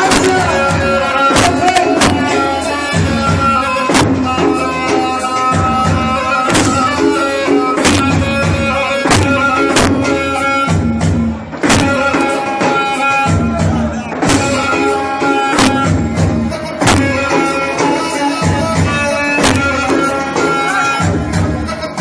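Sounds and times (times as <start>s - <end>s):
drum strokes: 0.0s - 22.0s
double-pipe reed instrument melody: 11.6s - 21.6s.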